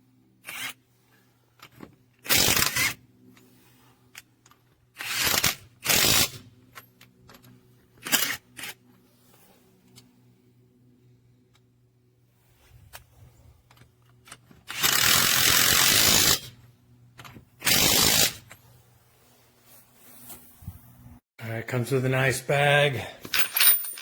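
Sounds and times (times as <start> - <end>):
rustling and scraping: 6.6 - 10.4, 12.3 - 14.7, 18.4 - 21.2.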